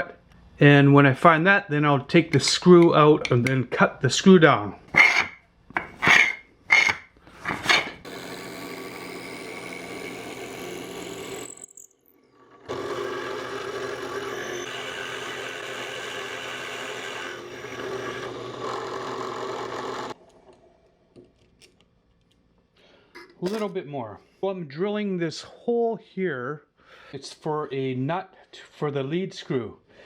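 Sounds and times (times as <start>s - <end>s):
power drill boring into wood: 6.0s - 11.8s, 12.4s - 20.2s.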